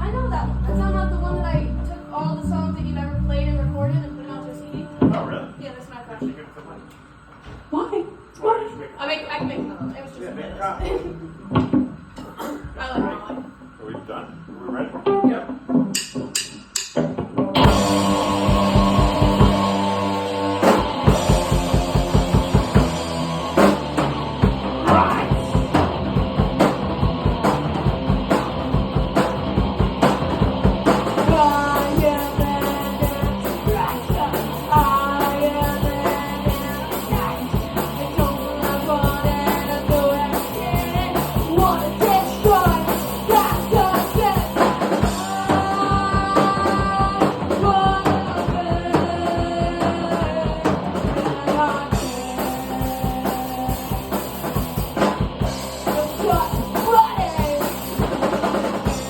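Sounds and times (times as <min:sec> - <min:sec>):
drum kit beat: 0:15.0 - 0:59.0
punk rock song: 0:17.4 - 0:59.0
person singing: 0:17.6 - 0:22.6, 0:31.2 - 0:54.5, 0:55.8 - 0:58.6.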